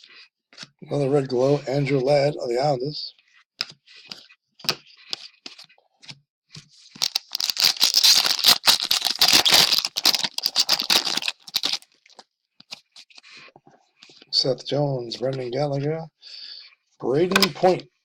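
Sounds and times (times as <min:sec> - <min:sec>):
wrapper crinkling and tearing: 0:06.9 - 0:12.2
trading cards clicking and rustling: 0:07.0 - 0:11.8.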